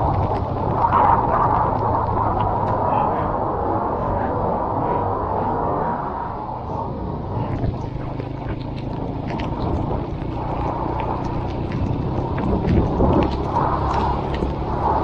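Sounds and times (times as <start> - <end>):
rain ticking: 0.0 - 2.8, 7.5 - 15.0
rush of wind: 0.0 - 15.0
motorcycle engine running: 7.8 - 14.8.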